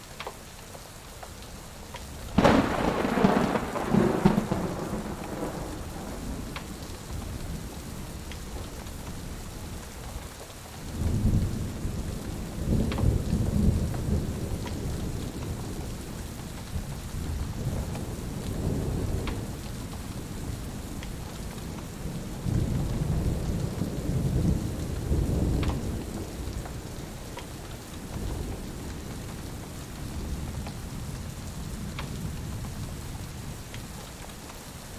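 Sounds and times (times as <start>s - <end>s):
crackling wood fire: 0.0s - 34.9s
steady rain: 0.0s - 34.9s
sharp thunderclap: 2.4s - 6.8s
low rolling thunder: 2.4s - 33.6s.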